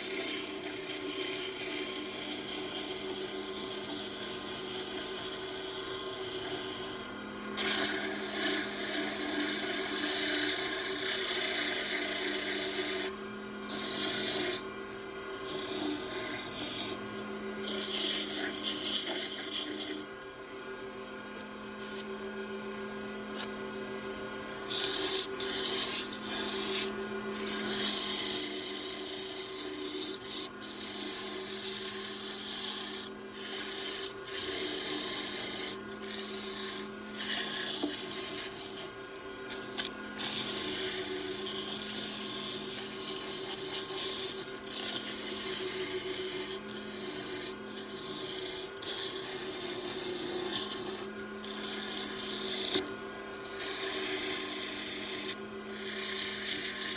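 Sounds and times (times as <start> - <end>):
hand tool scraping spinning wood: 0.0 - 13.1, 13.7 - 14.7, 15.4 - 17.0, 17.6 - 20.1, 24.7 - 56.9
wood lathe humming: 0.0 - 20.2, 24.2 - 56.9.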